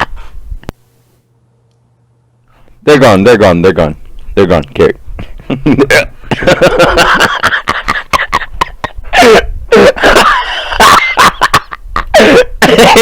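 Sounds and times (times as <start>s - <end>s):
man hiccuping: 8.4s - 10.2s, 12.1s - 13.0s.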